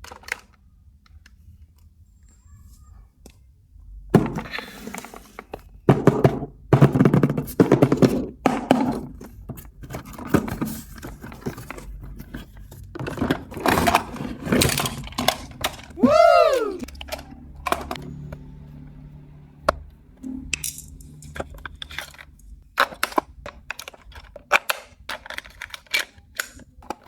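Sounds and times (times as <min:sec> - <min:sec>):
plastic toys knocking and clattering: 0:00.0 - 0:01.9, 0:04.1 - 0:18.4, 0:20.4 - 0:27.0.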